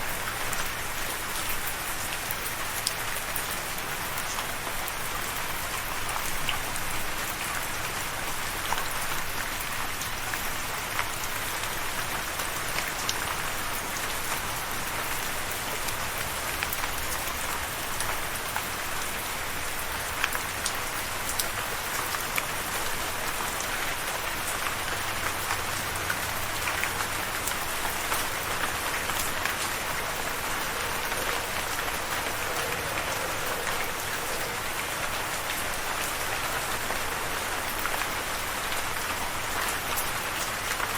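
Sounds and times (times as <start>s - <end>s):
rain falling: 0.0s - 40.9s
raindrops ticking on hard surface: 0.0s - 40.9s.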